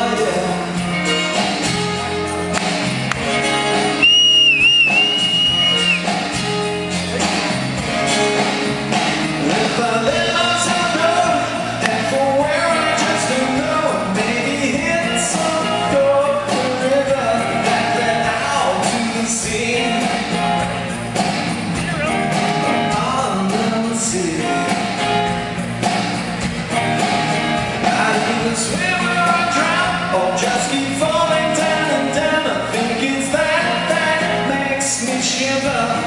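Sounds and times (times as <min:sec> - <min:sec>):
lead singer singing: 0:00.0 - 0:01.4, 0:09.3 - 0:20.8, 0:21.8 - 0:25.0, 0:27.8 - 0:36.0
live pop-rock band playing: 0:00.0 - 0:36.0.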